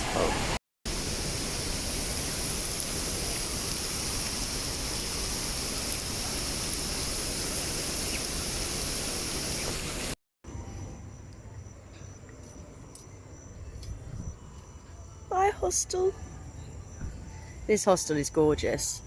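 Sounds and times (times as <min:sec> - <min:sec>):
waterfall roaring: 0:00.0 - 0:10.2.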